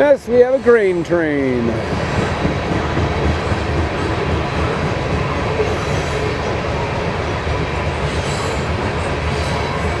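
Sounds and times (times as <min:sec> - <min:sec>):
train wheels running over rails: 0:00.0 - 0:10.0.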